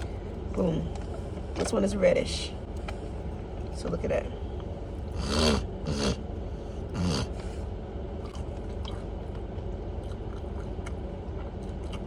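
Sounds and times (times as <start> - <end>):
steady low hum: 0.0 - 12.0
person chewing: 8.2 - 12.0.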